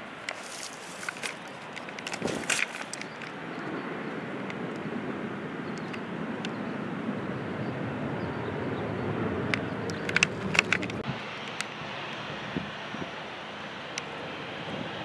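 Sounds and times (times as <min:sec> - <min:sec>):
distant engines rumbling: 0:00.0 - 0:15.0
sharp clicks: 0:09.5 - 0:11.7.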